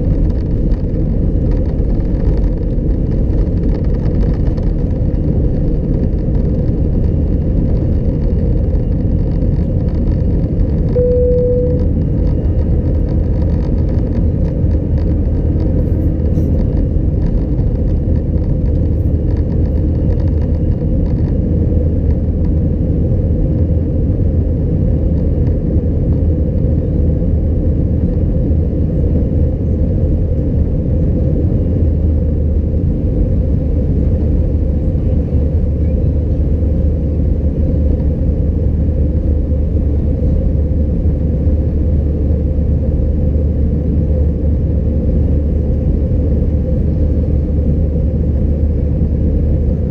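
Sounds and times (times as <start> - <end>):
jet engine cabin rumble: 0.0 - 49.9
short single tone: 10.9 - 12.0.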